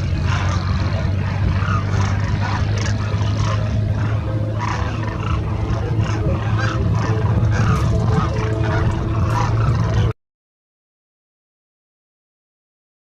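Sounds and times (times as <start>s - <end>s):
birds calling: 0.0s - 10.2s
steady low rumble: 0.0s - 10.2s.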